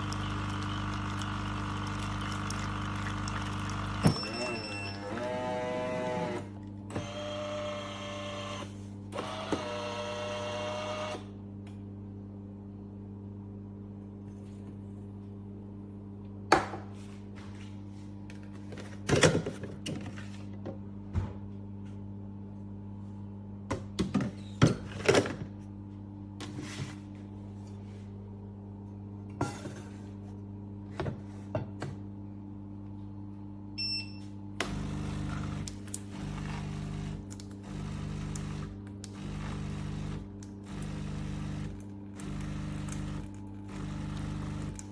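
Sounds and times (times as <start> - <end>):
espresso machine humming: 0.0 - 11.2, 34.6 - 44.9.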